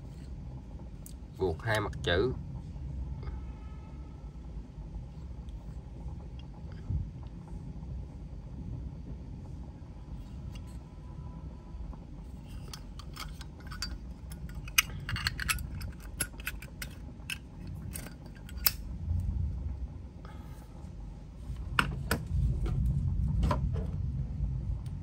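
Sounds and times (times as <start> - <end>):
lighter lids clicking open and shut: 12.7 - 18.8.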